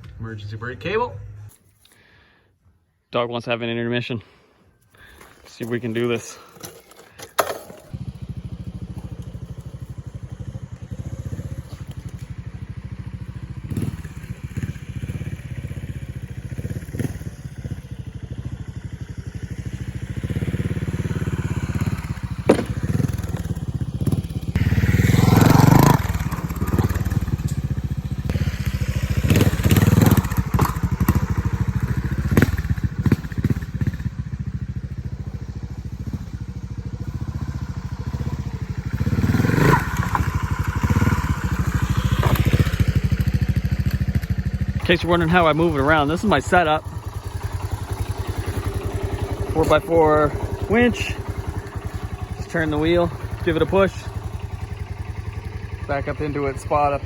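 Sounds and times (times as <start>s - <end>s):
crunching and scraping underneath: 4.8s - 8.0s
vehicle engine running: 5.0s - 57.0s
sharp knocks: 22.5s - 23.2s.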